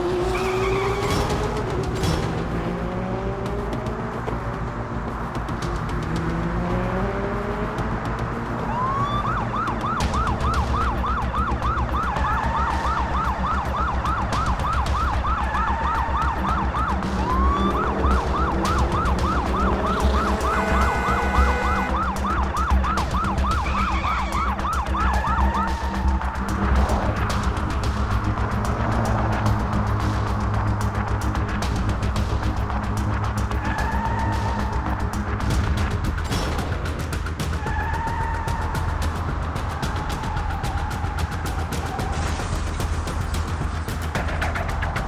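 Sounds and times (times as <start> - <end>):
music with low pulsing beat: 0.0 - 45.0
yelping emergency siren: 8.7 - 26.2.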